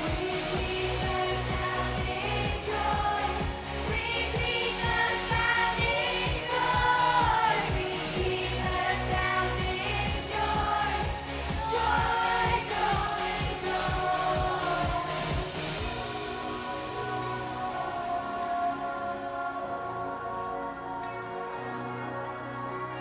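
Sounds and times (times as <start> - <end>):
children singing: 0.0 - 22.3
pop music with steady beat: 0.0 - 23.0.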